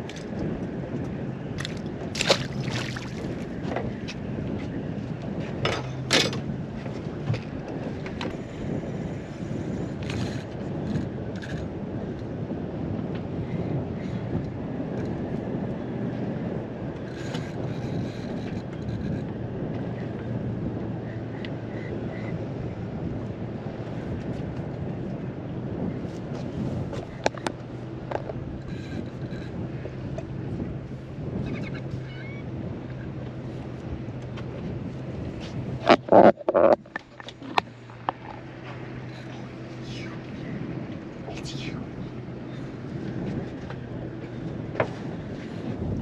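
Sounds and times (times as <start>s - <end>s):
water around boat hull: 0.0s - 46.0s
wind buffeting microphone: 0.0s - 46.0s.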